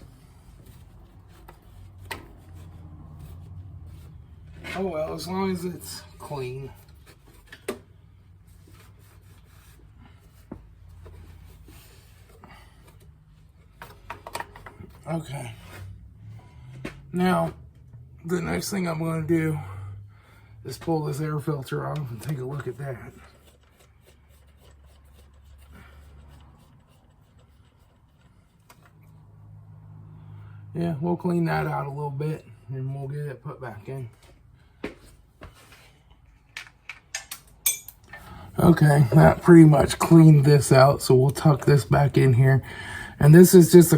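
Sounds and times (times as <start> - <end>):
rubbing and scuffing with cloth: 0.0 - 13.7, 34.1 - 36.2.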